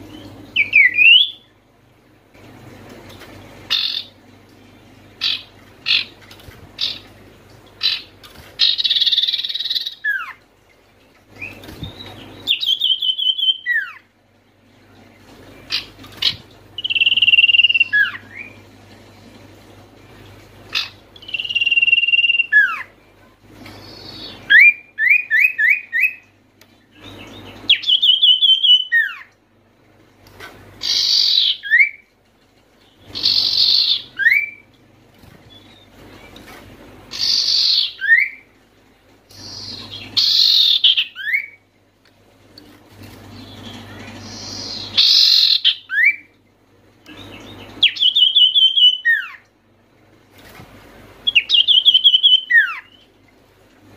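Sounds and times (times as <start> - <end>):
bird singing whistled phrases: 0.1 - 1.5, 11.4 - 14.0, 21.2 - 22.9, 23.8 - 26.2, 27.0 - 29.3, 33.2 - 34.6, 37.1 - 38.4, 44.3 - 46.3, 47.1 - 49.4, 51.3 - 53.1.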